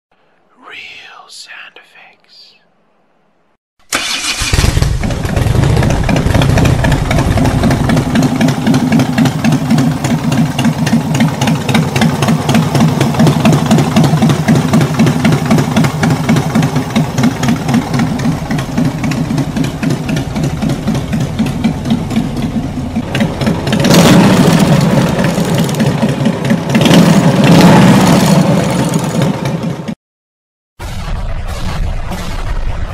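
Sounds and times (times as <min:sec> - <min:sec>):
motorcycle engine idling and revving: 0:04.0 - 0:30.0.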